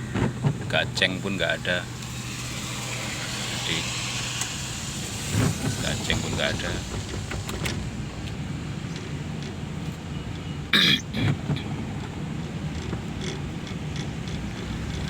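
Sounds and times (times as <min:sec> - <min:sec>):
car rumbling on road: 0:00.0 - 0:15.0
person clearing throat: 0:10.8 - 0:11.4
person coughing: 0:10.8 - 0:11.4.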